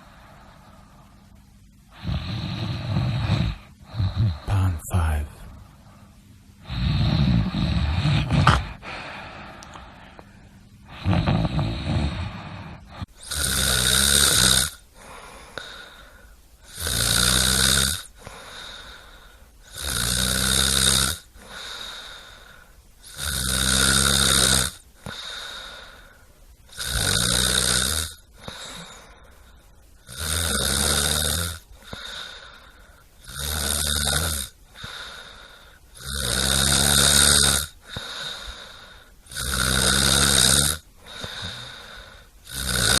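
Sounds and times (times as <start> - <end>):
faint breathing: 0.0 - 4.8, 5.4 - 13.2, 14.9 - 16.5, 18.1 - 19.8, 21.3 - 22.9, 24.9 - 26.6, 28.2 - 30.0, 31.6 - 33.2, 34.6 - 36.0, 37.7 - 39.3, 40.9 - 43.0
person snoring: 1.9 - 5.4, 6.6 - 10.2, 10.8 - 26.1, 26.7 - 29.2, 30.0 - 43.0.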